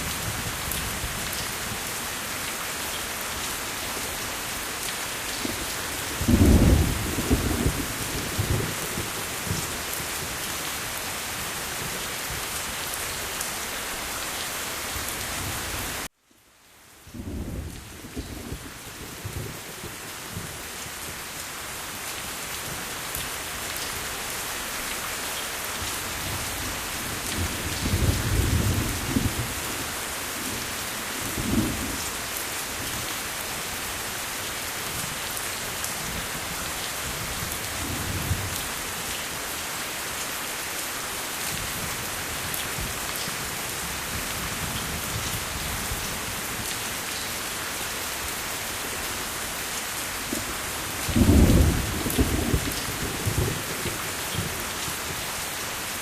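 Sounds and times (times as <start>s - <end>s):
steady rain hiss: 0.0s - 56.0s
thunder rumbling: 50.3s - 53.7s.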